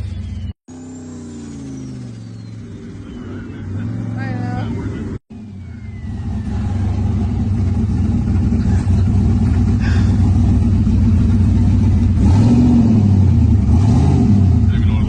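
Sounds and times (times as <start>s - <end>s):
car engine running: 0.0s - 15.0s.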